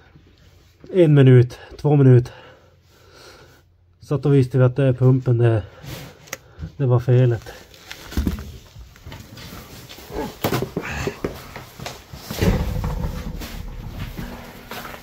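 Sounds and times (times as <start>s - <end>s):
low thump: 12.4s - 14.4s.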